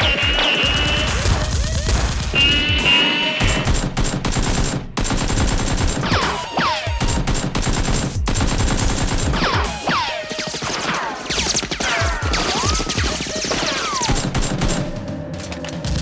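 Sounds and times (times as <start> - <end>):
automatic gunfire: 0.0 - 9.6.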